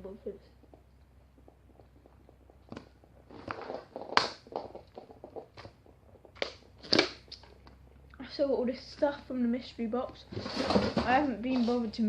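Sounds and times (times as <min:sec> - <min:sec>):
rustling: 0:00.0 - 0:08.2.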